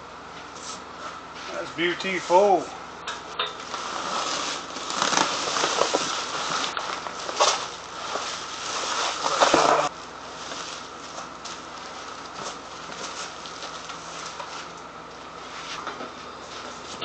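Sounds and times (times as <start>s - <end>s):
packing material rustling: 3.6s - 14.6s.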